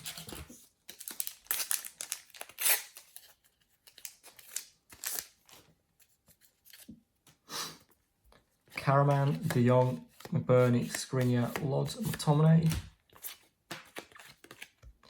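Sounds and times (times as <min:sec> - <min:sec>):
card packet wrapper tearing: 0:00.0 - 0:05.6
cards being handled: 0:00.0 - 0:06.9, 0:08.3 - 0:15.0.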